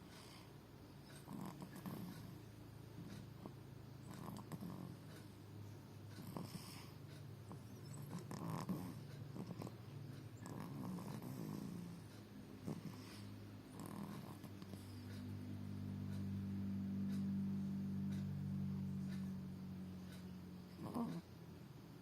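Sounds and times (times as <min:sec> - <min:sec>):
baby snoring: 0:01.2 - 0:02.4, 0:03.1 - 0:05.4, 0:06.2 - 0:09.8, 0:10.4 - 0:14.9, 0:20.7 - 0:21.3.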